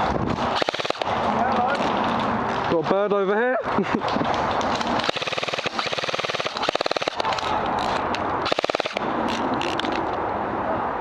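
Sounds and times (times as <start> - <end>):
airsoft rifle automatic fire: 0.5 - 1.1, 4.9 - 9.0.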